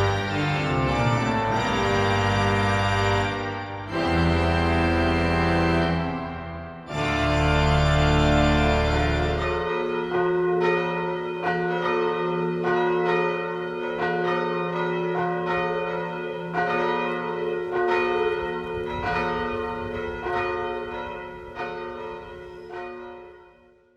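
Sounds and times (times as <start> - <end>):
church bells ringing: 0.0 - 23.9.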